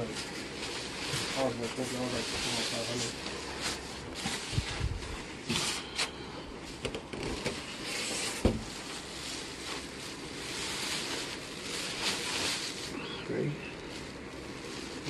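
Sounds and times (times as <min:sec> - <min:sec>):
packaging rustling and scraping: 0:00.0 - 0:15.0.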